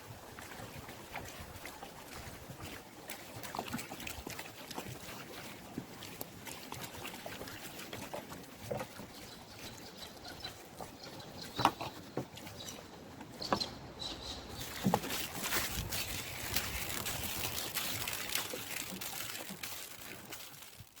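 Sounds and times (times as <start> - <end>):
fire popping and snapping: 14.9 - 21.0.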